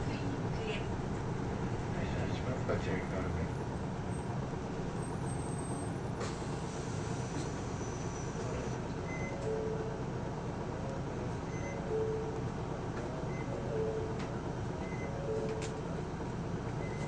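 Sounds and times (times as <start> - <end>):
bus diesel engine: 0.0 - 17.0
road rumble: 0.0 - 17.0
short beeps: 11.5 - 12.4.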